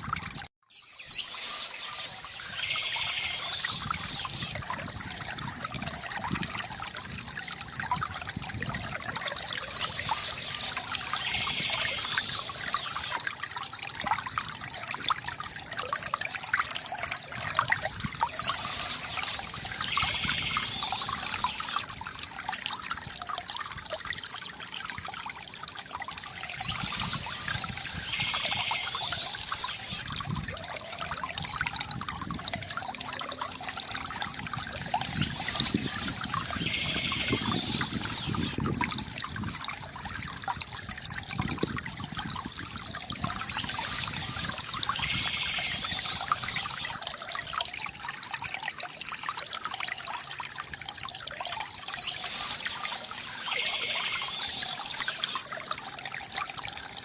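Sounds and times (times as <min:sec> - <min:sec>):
water trickling in a stream: 0:00.0 - 0:57.0
bird singing: 0:00.7 - 0:04.6, 0:09.6 - 0:13.2, 0:18.3 - 0:21.8, 0:26.5 - 0:30.1, 0:35.0 - 0:38.6, 0:43.3 - 0:46.9, 0:51.8 - 0:55.4.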